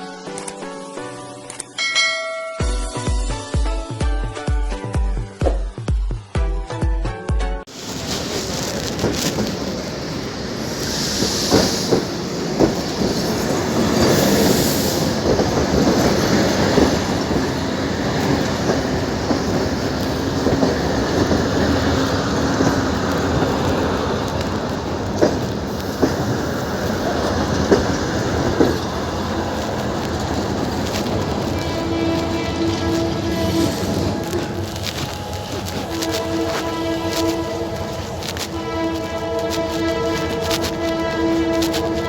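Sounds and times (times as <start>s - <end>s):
train rumbling on rails: 7.7s - 42.0s
wheels clacking over rail joints: 7.7s - 42.0s
high wheel squeals: 9.8s - 24.6s.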